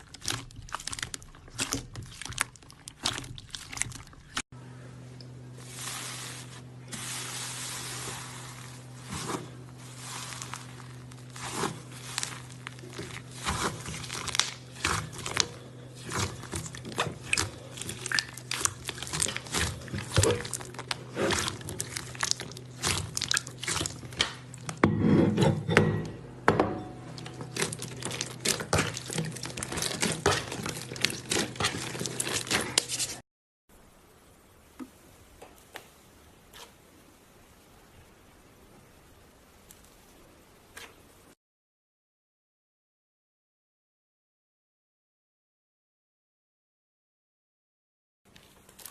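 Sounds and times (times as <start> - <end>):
slime squelching stretch: 0.0 - 4.4, 5.6 - 24.8, 27.2 - 33.2.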